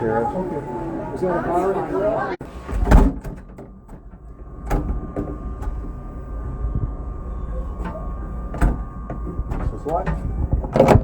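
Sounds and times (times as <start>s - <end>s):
faint high hum: 0.0s - 11.0s
steady low rumble: 2.4s - 11.0s
rail car door knocks and clunks: 2.6s - 11.0s.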